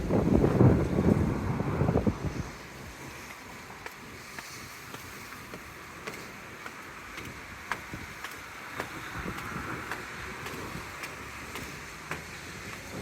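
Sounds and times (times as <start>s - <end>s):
footsteps on pavement: 2.8s - 13.0s.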